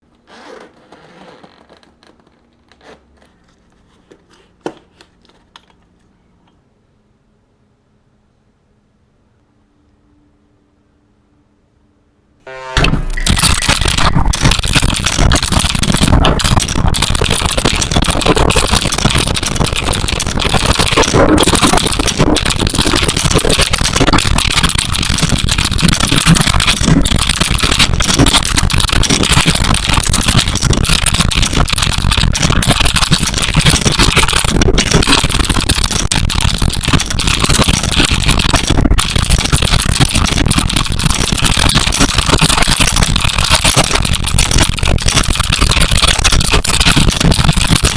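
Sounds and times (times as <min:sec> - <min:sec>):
fast mechanical keyboard typing: 0:12.8 - 0:47.9.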